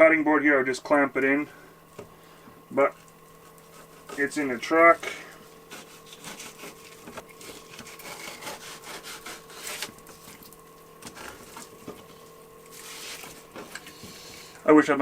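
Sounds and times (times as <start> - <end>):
knife scraping fish fillet: 3.4 - 4.4, 5.0 - 10.4.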